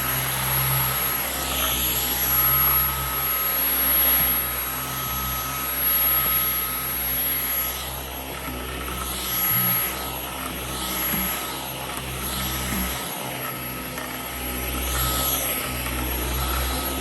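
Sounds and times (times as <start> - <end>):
vacuum cleaner running on carpet: 0.0 - 17.0.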